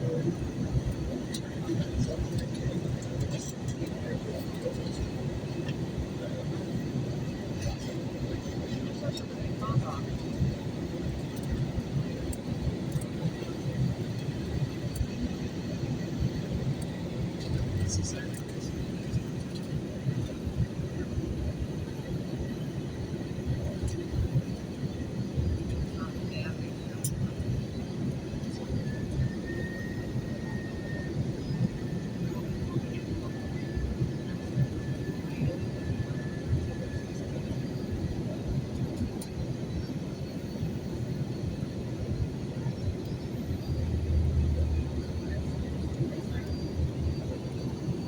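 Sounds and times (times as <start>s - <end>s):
airliner cabin roar in flight: 0.0s - 48.0s
faint high whine: 0.0s - 48.0s.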